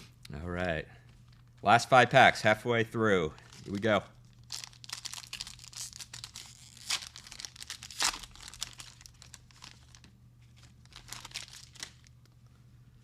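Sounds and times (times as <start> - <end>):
card pack wrapper crinkling: 3.3 - 12.4
wrapper ripping: 3.4 - 12.4.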